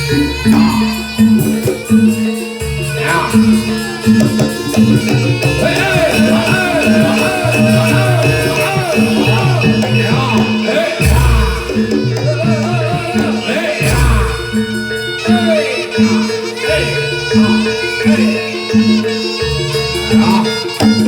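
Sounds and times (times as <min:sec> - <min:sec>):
drums: 0:00.0 - 0:15.4
pitched percussion figure: 0:00.0 - 0:21.0
wavering melody line: 0:00.0 - 0:21.0.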